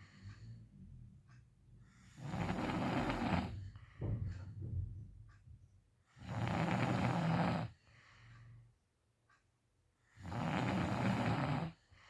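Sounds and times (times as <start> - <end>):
faint low sound: 0.5 - 1.9, 3.6 - 6.0.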